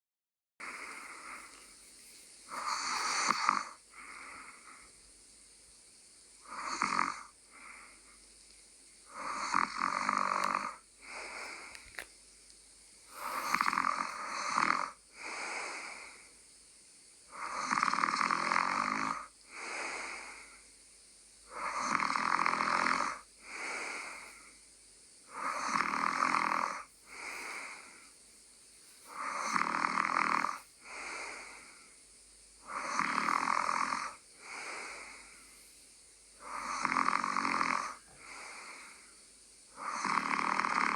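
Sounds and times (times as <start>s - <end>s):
person snoring: 0.6s - 1.6s, 2.5s - 4.9s, 6.4s - 8.0s, 9.1s - 11.8s, 13.1s - 16.3s, 17.3s - 20.6s, 21.5s - 24.6s, 25.2s - 28.2s, 29.0s - 32.0s, 32.6s - 35.6s, 36.4s - 39.1s, 39.7s - 40.9s.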